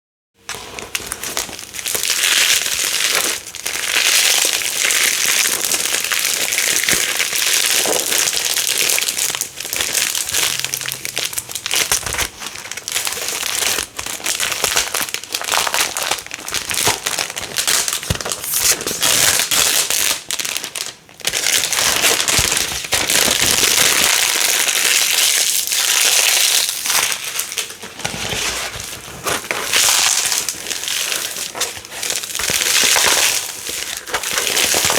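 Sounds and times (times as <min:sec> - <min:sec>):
velcro ripping apart: 0:13.0 - 0:20.3, 0:21.6 - 0:34.9.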